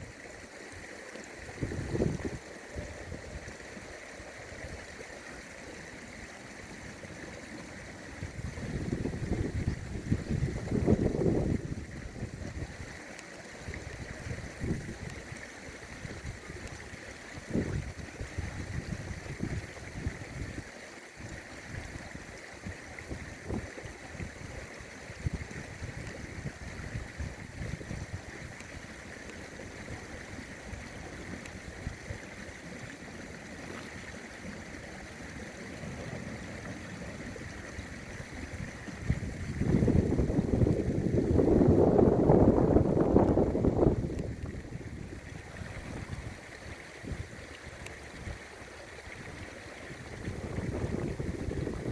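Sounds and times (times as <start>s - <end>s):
river water flowing: 0.0s - 51.9s
wind buffeting microphone: 1.4s - 3.6s, 8.0s - 13.0s, 13.6s - 20.6s, 21.3s - 28.7s, 35.8s - 51.9s.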